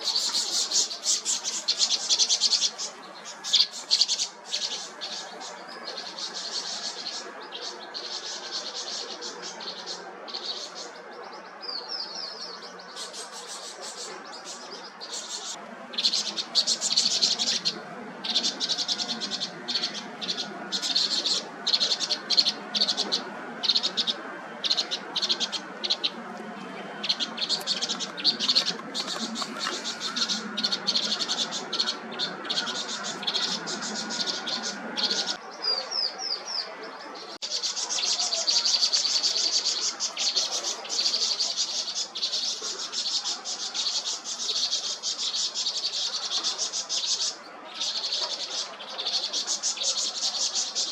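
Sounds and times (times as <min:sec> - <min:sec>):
birds chirping: 0:00.0 - 0:50.9.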